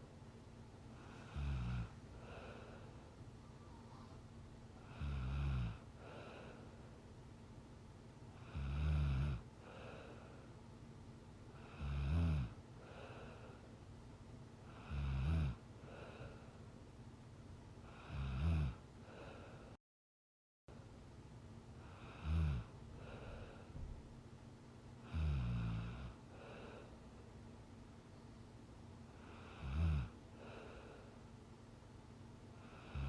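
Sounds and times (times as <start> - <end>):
faint steady hum: 0.0 - 19.8, 20.7 - 33.0
soft breaths: 0.0 - 19.8, 21.7 - 33.0
woman snoring: 1.0 - 3.0, 4.8 - 6.6, 8.4 - 10.3, 11.6 - 13.6, 14.7 - 16.4, 17.8 - 19.4, 21.8 - 23.7, 25.0 - 26.9, 29.2 - 31.0, 32.6 - 33.0.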